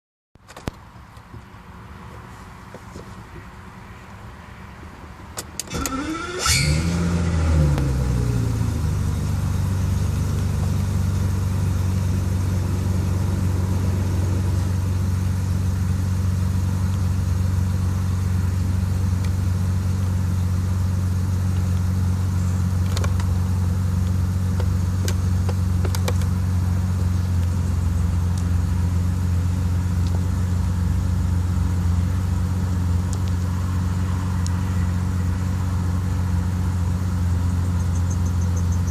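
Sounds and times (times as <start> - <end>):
engine cranking: 5.6 - 6.8
car engine revving and idling: 5.6 - 38.9.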